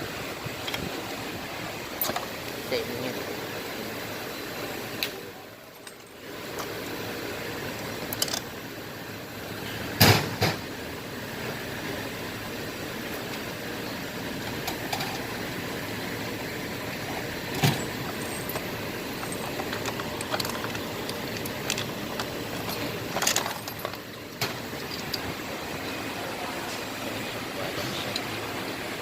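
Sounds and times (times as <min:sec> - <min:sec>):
steady background noise: 0:00.0 - 0:29.0
metal tool clanks: 0:17.5 - 0:26.0.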